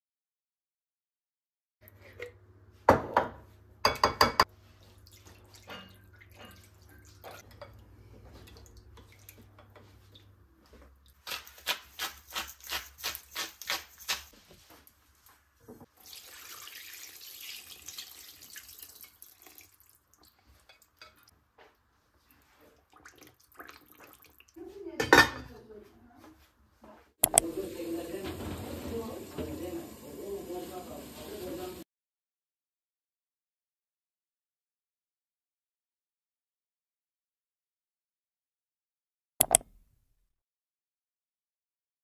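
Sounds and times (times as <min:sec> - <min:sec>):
sharp kitchen clatters: 0:05.6 - 0:06.7
tap running: 0:27.2 - 0:27.5, 0:39.4 - 0:39.7.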